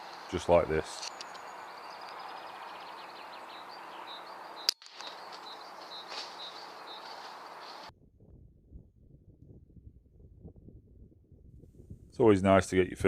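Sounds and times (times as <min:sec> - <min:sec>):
birdsong chirping: 0:00.0 - 0:07.9.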